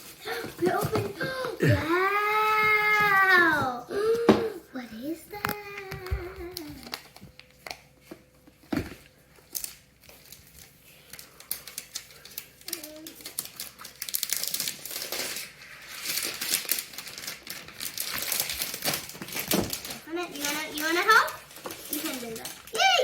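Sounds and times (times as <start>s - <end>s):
packaging crinkling: 8.8s - 23.0s.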